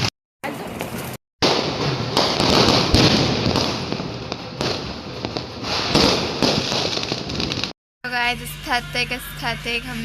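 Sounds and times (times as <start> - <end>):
fireworks bangs: 0.0 - 7.8
fireworks crackling: 0.0 - 7.8.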